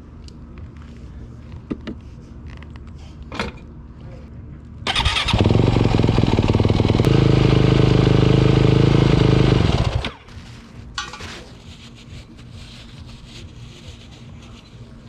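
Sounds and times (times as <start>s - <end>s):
motorcycle engine running: 4.9s - 10.2s.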